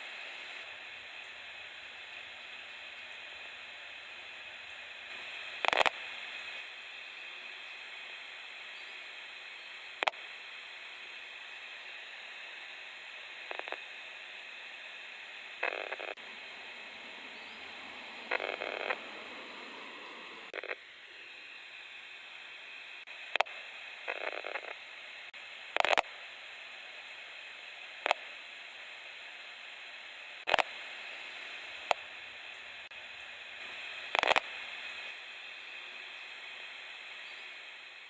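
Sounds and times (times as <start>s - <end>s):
steady hiss: 0.0s - 38.0s
sharp clicks: 30.5s - 30.7s.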